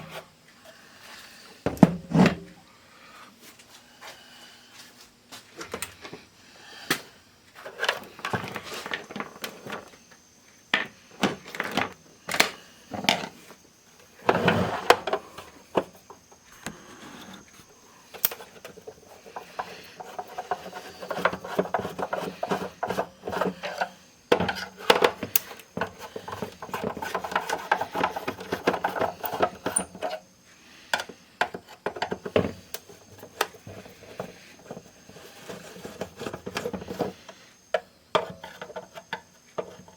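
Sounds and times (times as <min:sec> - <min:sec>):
scraping and rubbing: 0:16.6 - 0:17.6, 0:18.4 - 0:23.9, 0:33.2 - 0:37.2.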